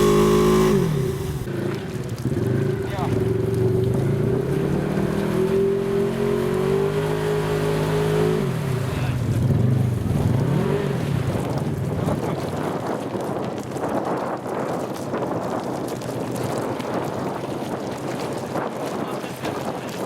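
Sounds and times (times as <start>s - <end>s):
off-road vehicle engine revving: 0.0s - 12.7s.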